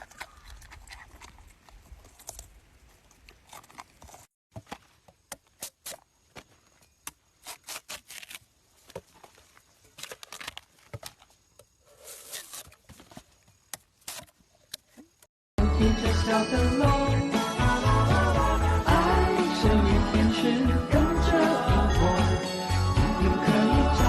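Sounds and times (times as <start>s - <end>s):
panda chewing crunchily: 0.0s - 2.5s.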